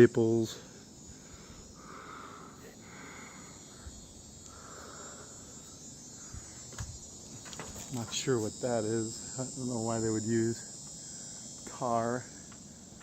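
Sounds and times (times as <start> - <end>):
insect chorus trilling: 0.0 - 13.0.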